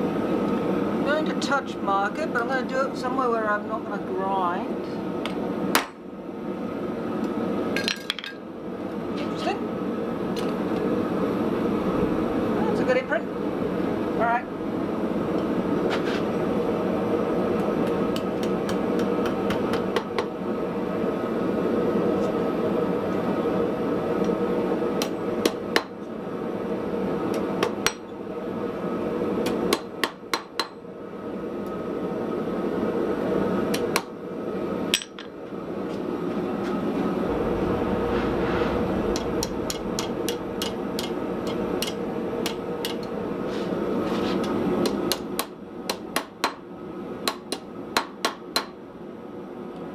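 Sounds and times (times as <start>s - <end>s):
steady rushing noise: 36.9s - 43.5s.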